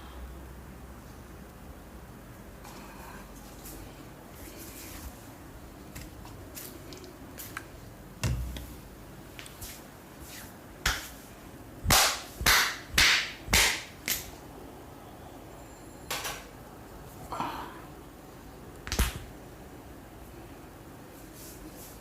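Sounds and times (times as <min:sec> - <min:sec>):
hands smacking skin: 0:18.9 - 0:19.3.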